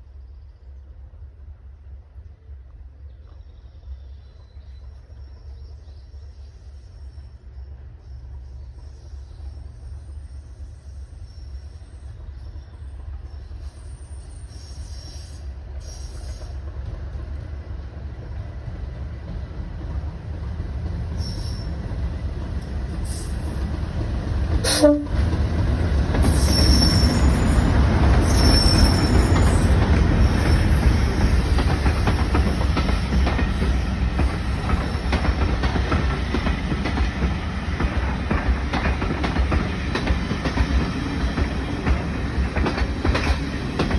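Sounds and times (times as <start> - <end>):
train running past: 0.0 - 43.9
short high-pitched squeals: 28.2 - 29.8.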